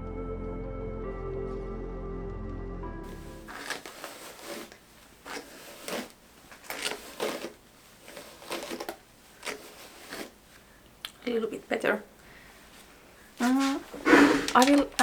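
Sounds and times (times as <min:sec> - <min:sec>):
short scratchy rustles: 0:03.1 - 0:10.6.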